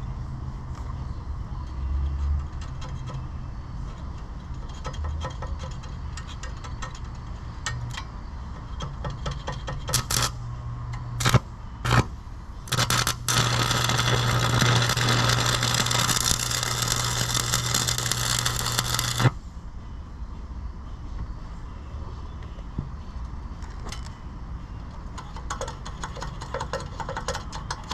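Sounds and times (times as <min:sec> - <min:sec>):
welder humming: 0:09.9 - 0:10.4, 0:11.2 - 0:19.4
welding arc crackling: 0:09.9 - 0:10.4, 0:11.2 - 0:19.4.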